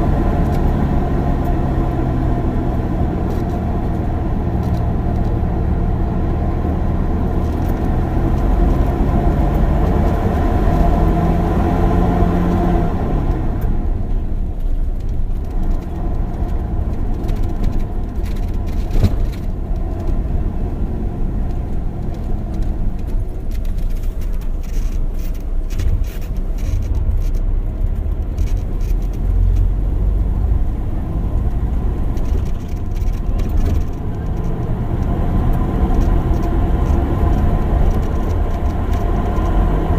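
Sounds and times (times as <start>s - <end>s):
bus engine: 0.0s - 39.9s
deep road rumble: 0.0s - 39.9s
seats rattling and squeaking: 14.7s - 20.4s, 21.3s - 29.6s, 31.9s - 39.9s.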